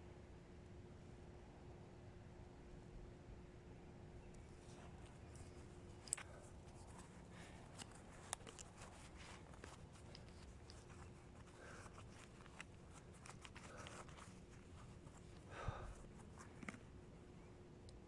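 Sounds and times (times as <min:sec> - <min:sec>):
faint steady hum: 0:00.0 - 0:18.0
rustling: 0:04.4 - 0:17.6.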